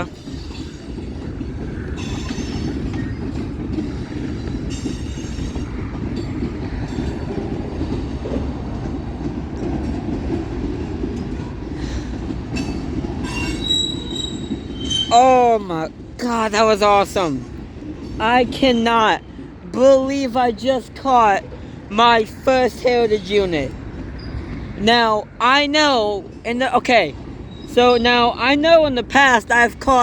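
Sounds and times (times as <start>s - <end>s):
steel wheels rumbling on rail: 0.0s - 30.0s
high-pitched wheel squeals: 1.9s - 3.3s, 12.6s - 15.2s.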